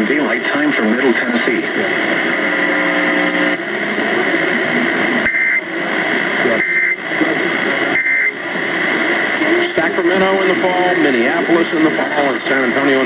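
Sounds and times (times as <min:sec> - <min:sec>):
noisy radio reception: 0:00.0 - 0:13.0
low steady buzzing tone: 0:02.0 - 0:09.9
harsh two-tone digital squawks: 0:05.2 - 0:05.7, 0:06.6 - 0:07.0, 0:07.9 - 0:08.4.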